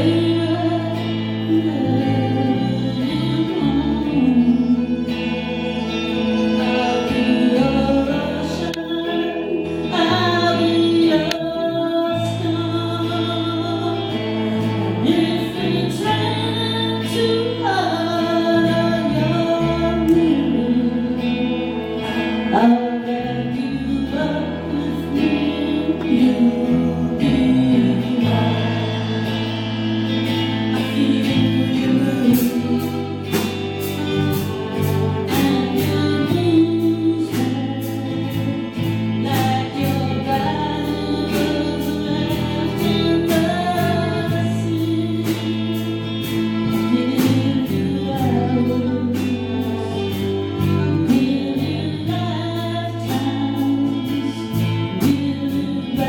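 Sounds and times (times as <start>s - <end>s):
band playing: 0.0s - 56.0s
person singing: 0.0s - 56.0s.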